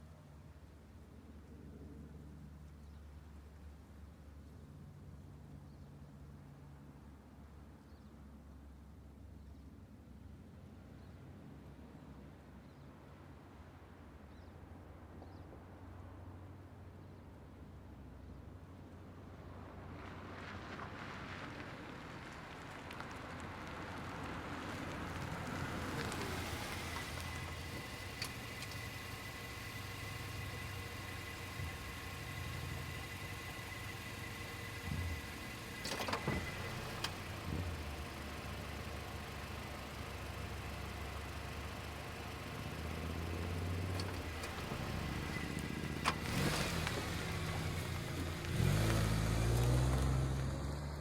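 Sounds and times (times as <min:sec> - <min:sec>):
cars driving past: 0:20.0 - 0:51.0.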